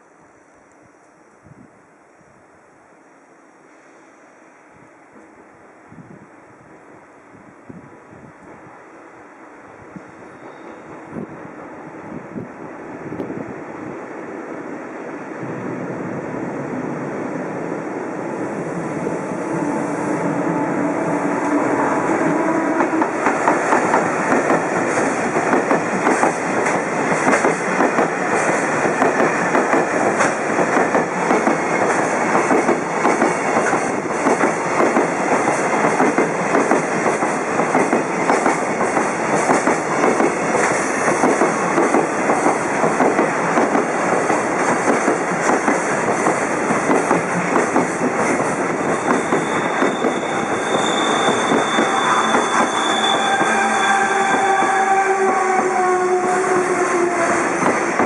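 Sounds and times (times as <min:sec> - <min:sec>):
freight train rolling: 0:02.4 - 0:58.0
train wheels clacking over rail joints: 0:22.2 - 0:56.8, 0:57.5 - 0:58.0.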